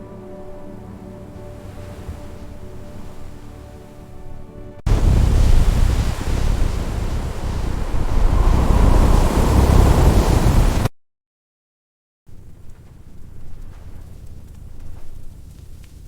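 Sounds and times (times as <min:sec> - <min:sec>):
strong blizzard wind: 0:00.0 - 0:10.9.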